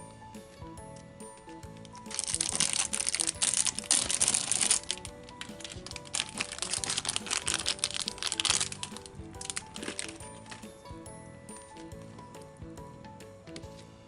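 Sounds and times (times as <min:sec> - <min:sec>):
background music: 0:00.0 - 0:14.0
plastic wrapper crinkling: 0:01.8 - 0:10.7.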